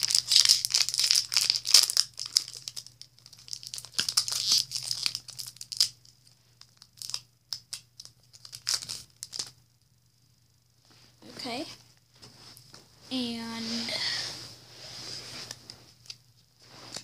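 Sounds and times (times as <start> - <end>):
foil wrapper crinkling and tearing: 0.0 - 9.6
faint low hum: 0.0 - 17.0.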